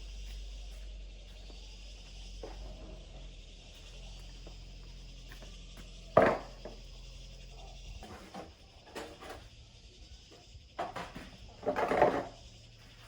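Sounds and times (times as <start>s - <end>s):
low steady hum: 0.0s - 8.0s
hard objects knocking and clattering: 6.1s - 6.8s.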